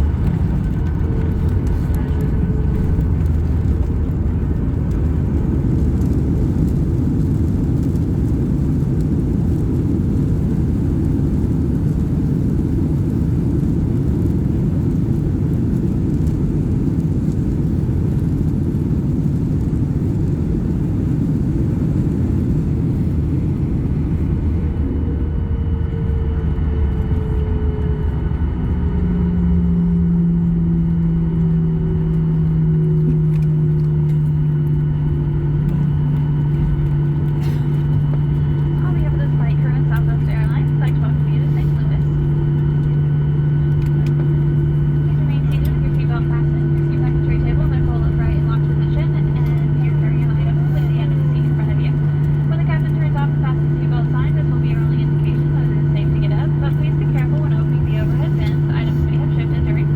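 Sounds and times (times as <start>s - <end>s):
airplane cabin rumble: 0.0s - 59.9s
jet engine tones: 19.7s - 59.9s.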